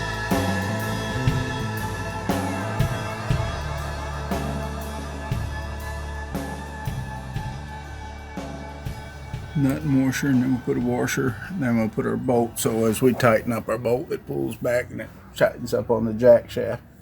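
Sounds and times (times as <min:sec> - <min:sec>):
rock music with drums and guitar: 0:00.0 - 0:11.2.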